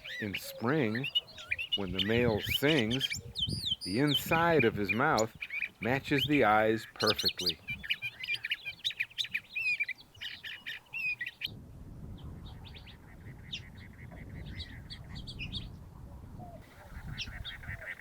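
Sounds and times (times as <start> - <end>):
high bird chirps: 0.0 - 11.5
bird singing warbled phrases: 0.0 - 11.6, 12.2 - 15.8, 16.4 - 18.0.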